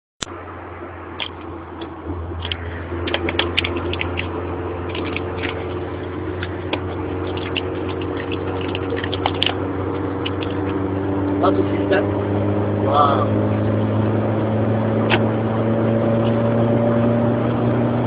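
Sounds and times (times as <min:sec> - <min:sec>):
engine humming: 0:00.2 - 0:18.0
sharp clicks and rattles: 0:01.2 - 0:11.5.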